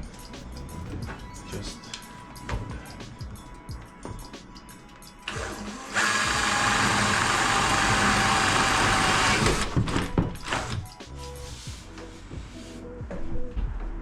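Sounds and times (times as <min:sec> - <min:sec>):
electric drill boring wood: 0:05.3 - 0:10.8.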